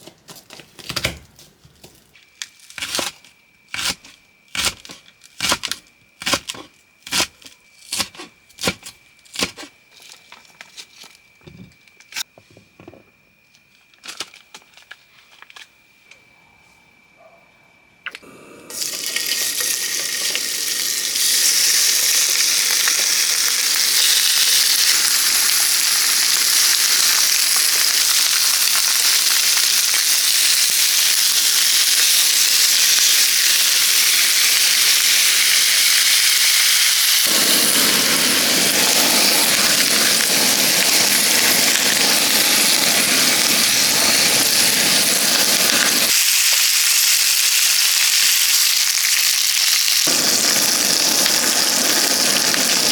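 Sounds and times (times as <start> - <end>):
food sizzling in a pan: 18.3 - 52.9.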